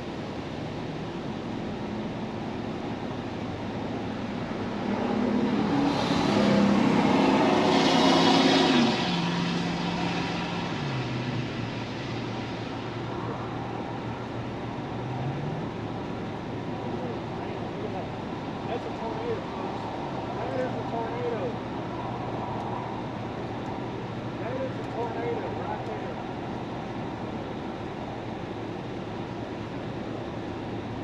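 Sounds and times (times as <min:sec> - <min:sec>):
road noise: 0:00.0 - 0:31.0
truck engine accelerating: 0:03.8 - 0:31.0.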